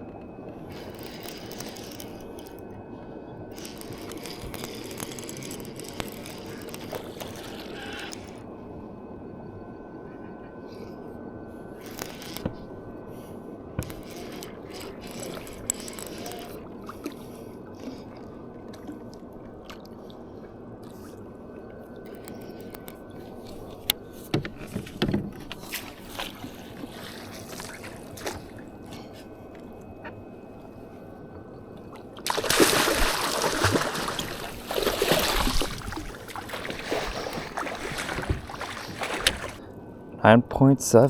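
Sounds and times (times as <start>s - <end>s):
water sloshing against kayak hull: 31.9s - 39.6s.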